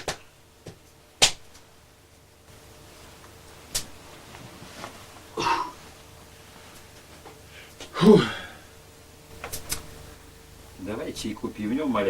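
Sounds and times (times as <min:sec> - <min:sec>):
person coughing: 0:05.4 - 0:05.9, 0:07.9 - 0:08.6.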